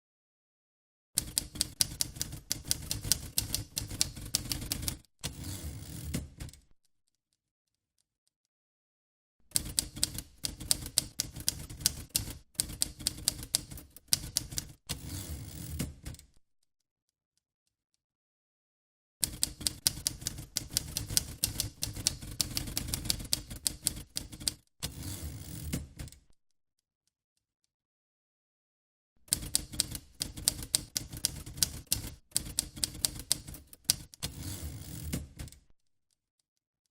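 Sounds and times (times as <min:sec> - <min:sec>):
typewriter keys striking: 0:01.2 - 0:05.0, 0:09.5 - 0:14.8, 0:19.2 - 0:24.6, 0:29.3 - 0:35.6.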